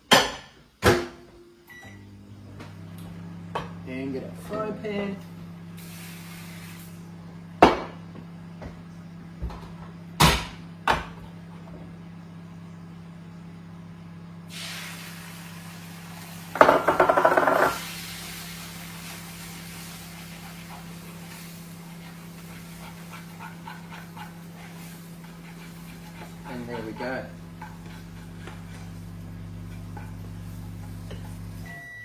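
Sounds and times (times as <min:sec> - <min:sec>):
hiss: 0:05.8 - 0:07.1, 0:14.5 - 0:16.6, 0:17.7 - 0:26.4
pan rattling on stove: 0:16.6 - 0:17.9.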